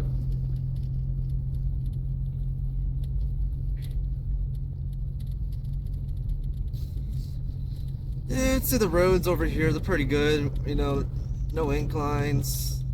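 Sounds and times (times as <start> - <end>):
car engine drone: 0.0 - 12.9.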